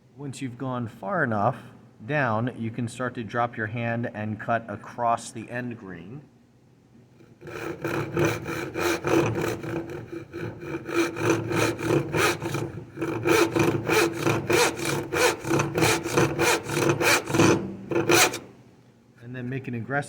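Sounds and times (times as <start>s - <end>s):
hand saw cutting wood: 7.2s - 18.6s.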